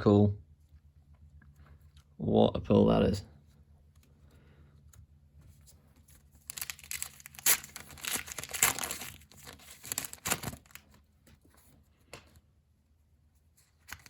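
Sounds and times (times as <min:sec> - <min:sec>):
wrapper tearing and crinkling: 0:06.4 - 0:11.0.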